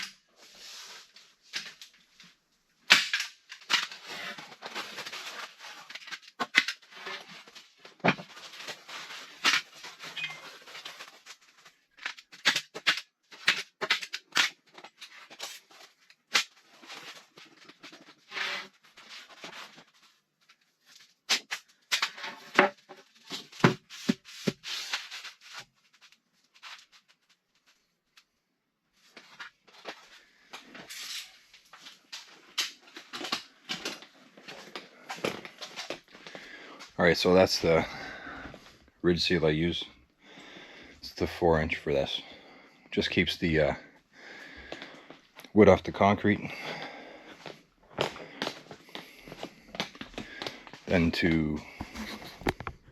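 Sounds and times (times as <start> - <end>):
scraping and rustling: 51.7 - 52.9.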